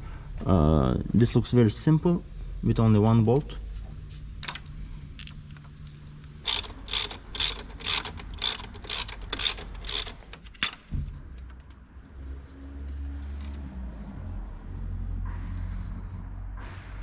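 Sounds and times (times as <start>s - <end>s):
ratchet wrench clicking: 6.4s - 10.9s.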